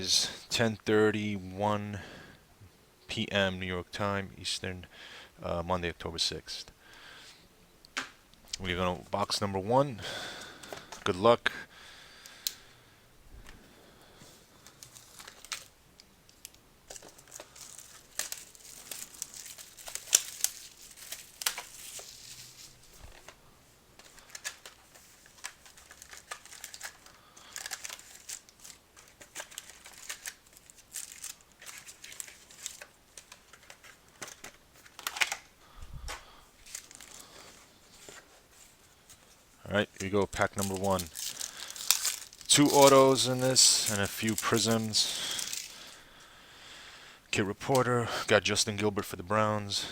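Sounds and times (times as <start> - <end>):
plastic wrapping crinkling and tearing: 14.5 - 15.7, 16.3 - 23.4, 24.0 - 35.5, 36.6 - 46.0.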